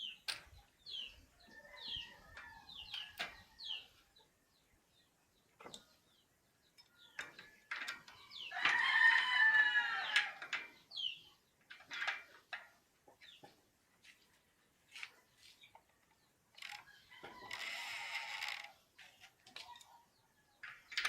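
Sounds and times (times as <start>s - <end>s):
rooster crowing: 8.5s - 10.4s.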